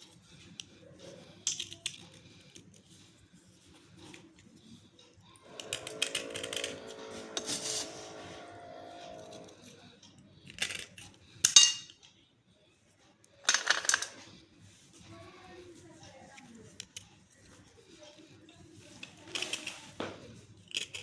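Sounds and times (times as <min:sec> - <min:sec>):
steady pitched tone: 0:05.5 - 0:09.7
slate pencils clinking: 0:05.5 - 0:09.8, 0:13.5 - 0:14.2.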